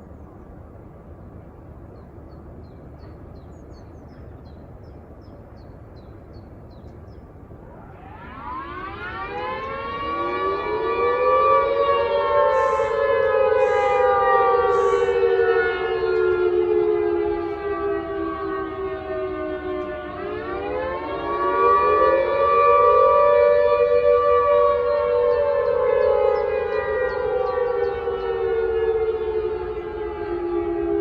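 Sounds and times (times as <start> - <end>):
warning sirens winding up: 7.6 - 31.0.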